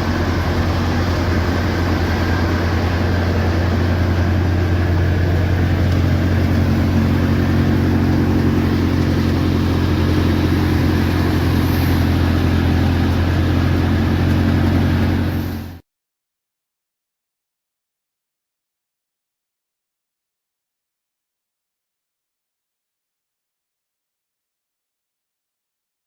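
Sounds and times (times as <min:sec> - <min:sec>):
farm machinery engine humming: 0:00.0 - 0:15.8.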